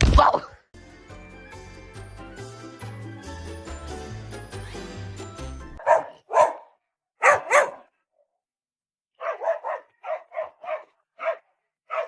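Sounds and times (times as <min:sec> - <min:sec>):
background music: 0:00.8 - 0:05.9
dog barking: 0:05.8 - 0:08.0, 0:09.2 - 0:12.0.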